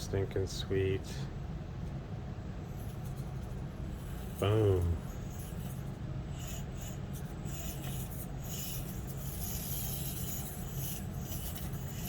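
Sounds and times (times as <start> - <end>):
scratchy rubbing and scraping: 2.7 - 12.0.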